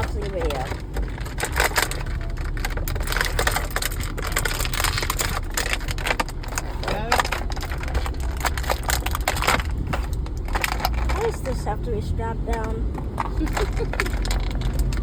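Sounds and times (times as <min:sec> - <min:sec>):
plastic packaging clicking and crackling: 0:00.0 - 0:11.8, 0:12.5 - 0:15.0
low rumble in a car: 0:00.0 - 0:15.0.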